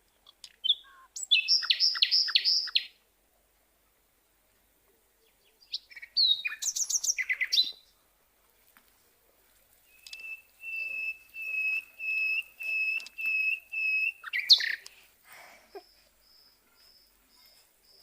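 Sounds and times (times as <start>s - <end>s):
small bird chirping: 0.0s - 3.0s, 5.1s - 8.0s, 9.8s - 15.1s, 15.7s - 18.0s.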